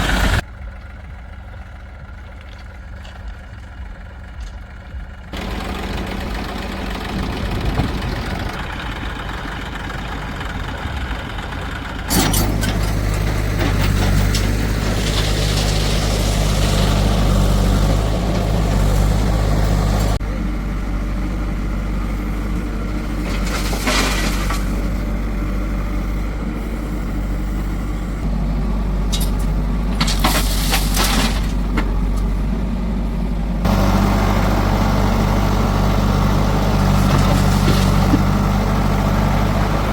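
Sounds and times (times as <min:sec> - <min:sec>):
heavy diesel engines running: 0:00.0 - 0:39.9
metal clanking: 0:11.0 - 0:20.2, 0:29.0 - 0:32.4.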